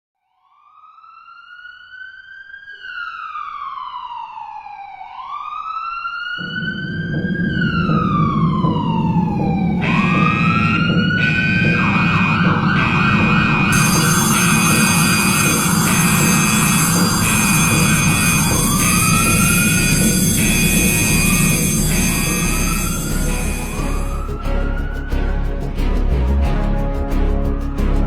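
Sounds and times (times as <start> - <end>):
siren wailing: 0.8 - 24.8
loud steady noise: 9.1 - 24.4.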